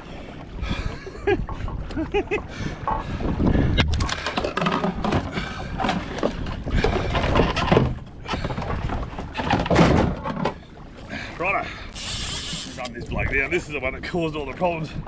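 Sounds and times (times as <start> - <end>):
knocks and thuds on kayak: 2.9 - 10.6
water splashing: 11.6 - 13.4.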